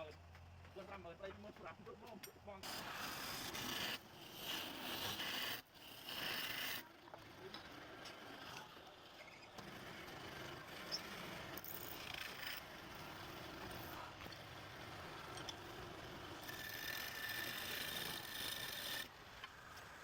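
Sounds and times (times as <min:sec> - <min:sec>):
chisel scraping on wood: 0:02.6 - 0:06.9, 0:07.5 - 0:19.1.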